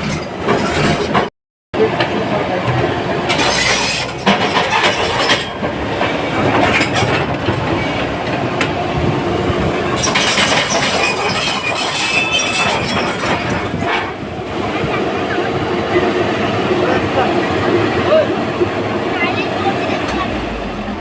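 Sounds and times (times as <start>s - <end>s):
excavator diesel engine under load: 0.0s - 21.0s
dense irregular clatter: 2.7s - 8.1s, 10.0s - 14.1s.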